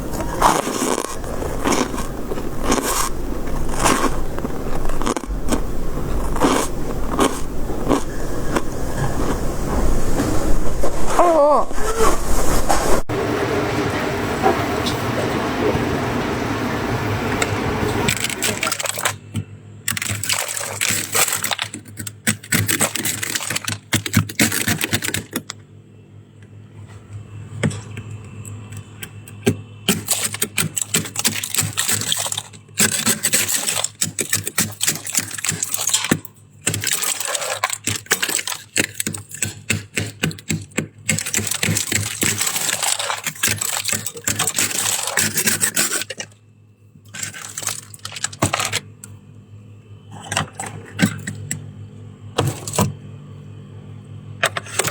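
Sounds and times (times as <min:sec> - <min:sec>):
shaved ice crunched and chewed: 0:00.0 - 0:10.2, 0:18.1 - 0:19.3, 0:19.9 - 0:25.5, 0:29.8 - 0:46.4, 0:47.1 - 0:49.1.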